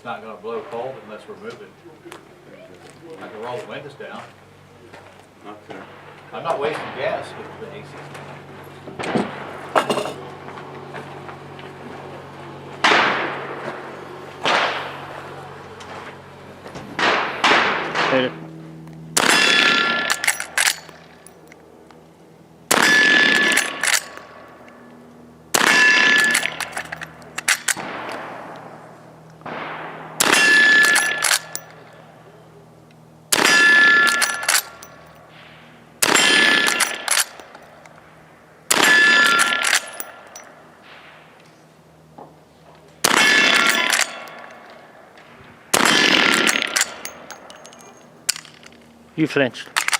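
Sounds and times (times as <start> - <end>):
gunshots: 14.4 - 15.0, 17.0 - 18.3, 19.2 - 20.8, 22.7 - 24.2, 25.5 - 28.5, 29.4 - 31.7, 33.3 - 34.9, 36.0 - 37.4, 38.7 - 40.2, 43.0 - 44.4, 45.7 - 47.8
steel target ringing clang: 22.7 - 24.4, 25.6 - 26.7, 29.5 - 31.9, 33.3 - 35.2, 36.0 - 37.5, 38.7 - 40.6, 43.1 - 44.5.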